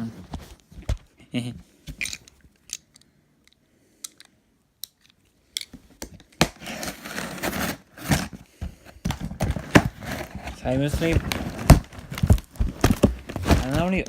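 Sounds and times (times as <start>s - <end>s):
package wrapping rustling and tearing: 6.4s - 8.4s, 9.1s - 14.0s.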